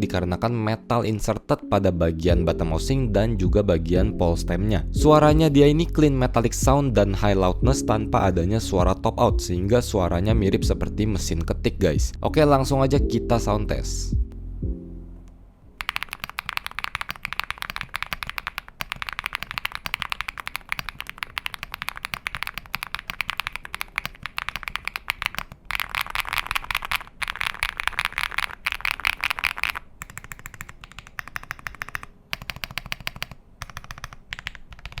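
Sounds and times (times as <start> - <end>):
mechanical keyboard typing: 15.8 - 35.0.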